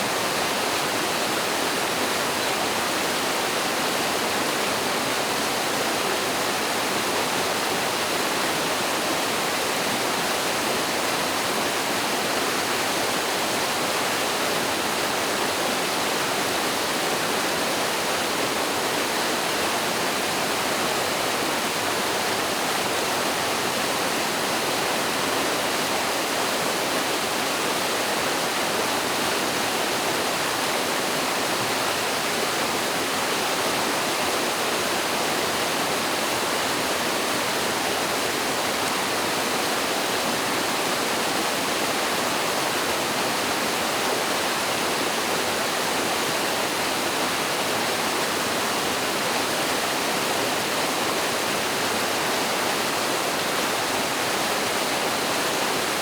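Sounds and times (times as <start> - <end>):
water rushing over waterfall: 0.0 - 56.0.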